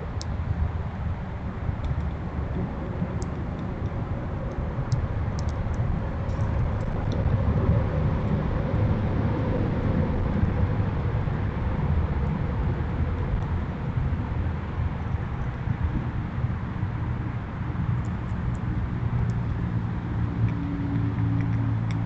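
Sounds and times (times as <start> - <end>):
low outdoor rumble: 0.0 - 22.0.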